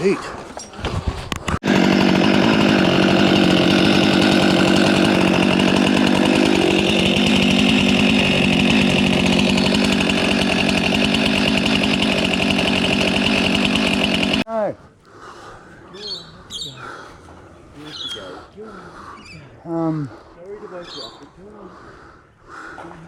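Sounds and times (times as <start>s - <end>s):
chainsaw running: 1.5s - 14.5s.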